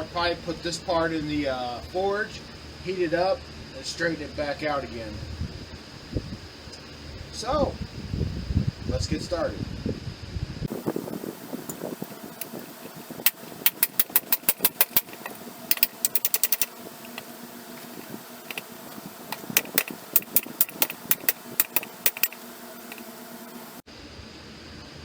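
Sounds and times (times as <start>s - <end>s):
low steady hum: 0.0s - 25.0s
sharp metallic clicks on vise: 13.2s - 18.7s, 19.3s - 23.1s.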